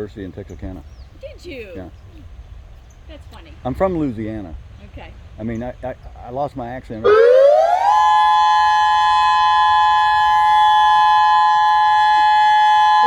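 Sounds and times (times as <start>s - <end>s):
warning siren two-note tone: 7.1s - 13.0s.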